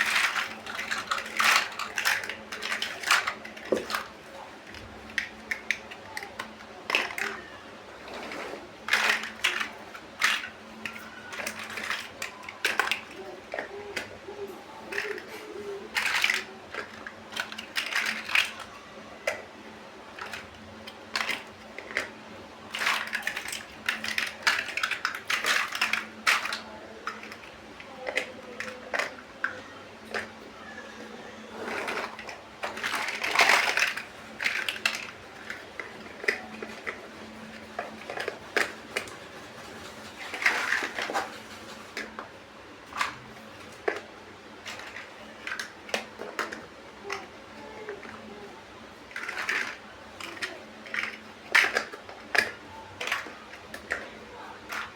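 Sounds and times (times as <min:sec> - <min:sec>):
plastic bricks clicking: 0:00.0 - 0:07.5, 0:08.1 - 0:19.5, 0:20.1 - 0:30.4, 0:31.6 - 0:48.4, 0:49.1 - 0:54.9.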